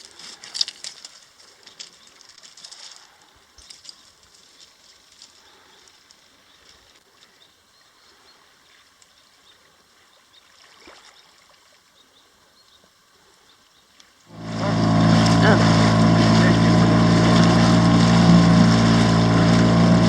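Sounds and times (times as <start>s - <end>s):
outboard motor running: 14.3s - 20.0s.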